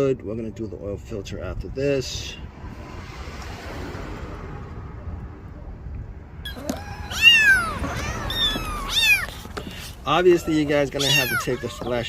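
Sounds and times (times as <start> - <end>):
cat meowing: 6.5 - 9.5, 10.3 - 12.0.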